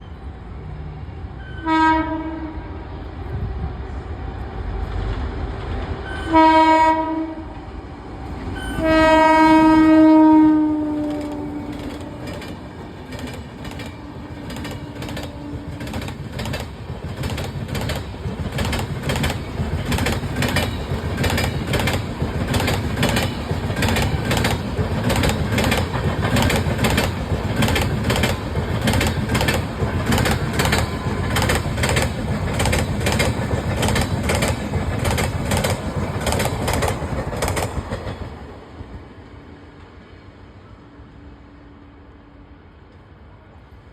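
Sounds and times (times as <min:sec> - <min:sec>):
locomotive horn blast: 0:01.4 - 0:02.9, 0:06.1 - 0:07.6, 0:08.6 - 0:12.5
train wheels clattering on rails: 0:10.8 - 0:39.0.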